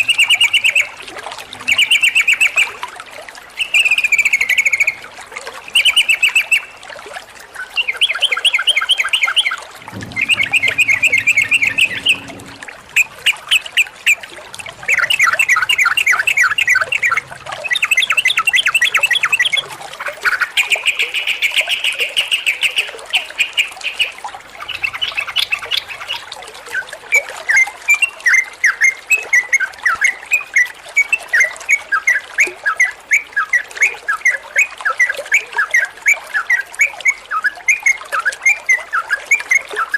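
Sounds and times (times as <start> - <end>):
bird singing chattering song: 7.8 - 12.4.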